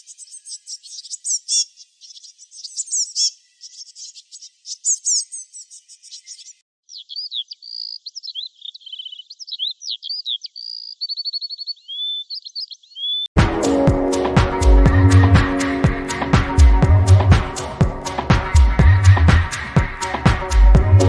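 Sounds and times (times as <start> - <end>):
animal chirps and squeaks: 0.0 - 13.3.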